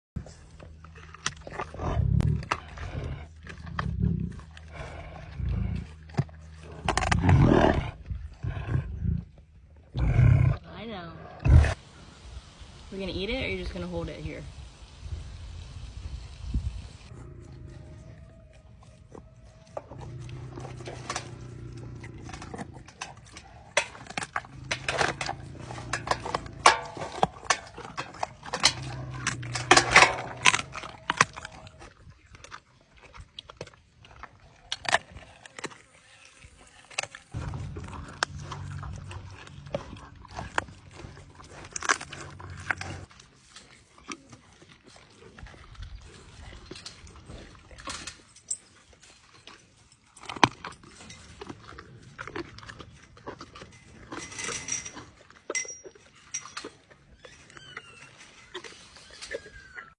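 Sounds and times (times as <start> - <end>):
animal crunching food: 0.2 - 10.3, 17.1 - 59.9
low animal rumbling: 0.2 - 12.1, 16.2 - 32.6, 37.3 - 44.5.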